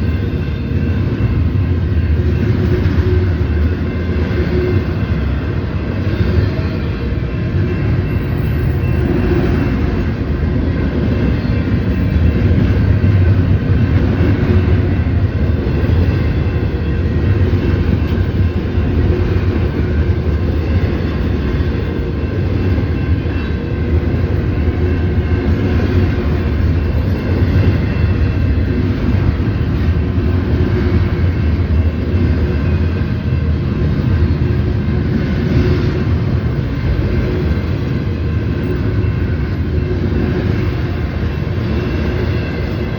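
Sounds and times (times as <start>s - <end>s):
train wheels rumbling on rail: 0.0s - 42.9s.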